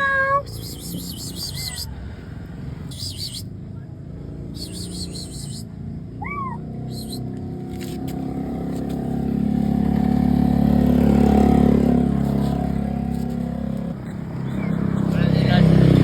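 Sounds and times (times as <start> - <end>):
car passing by: 6.9 - 16.0.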